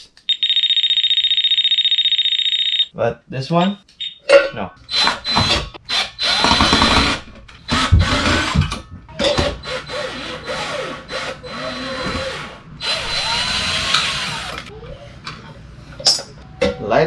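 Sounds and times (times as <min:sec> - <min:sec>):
power drill motor whine: 0:09.6 - 0:14.7.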